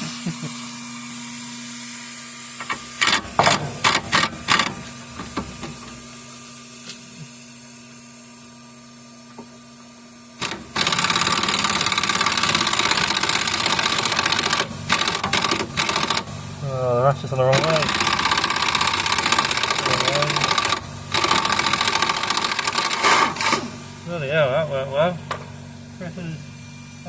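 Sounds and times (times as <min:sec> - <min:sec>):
steady low hum: 0:00.0 - 0:27.0
impact wrench hammering: 0:02.6 - 0:06.0, 0:10.4 - 0:16.3, 0:17.6 - 0:23.8.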